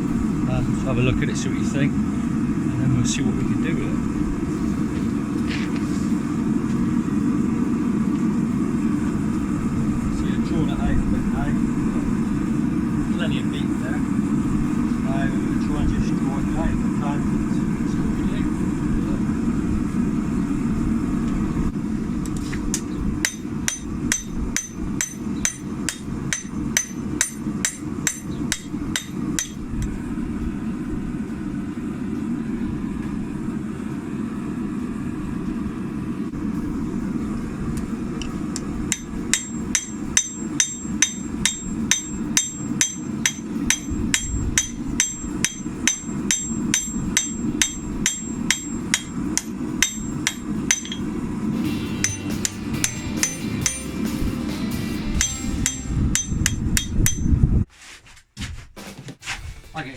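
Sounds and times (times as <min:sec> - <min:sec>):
steady low roar: 0:01.9 - 0:05.3
hammer ringing on anvil: 0:23.2 - 0:29.7, 0:38.9 - 0:57.4.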